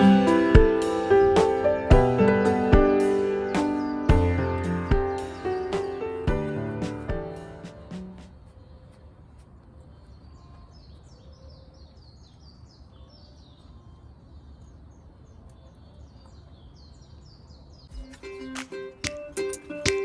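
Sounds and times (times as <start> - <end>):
plucked ukulele music: 0.0 - 8.2, 18.0 - 20.0
songbird chirping: 0.0 - 20.0.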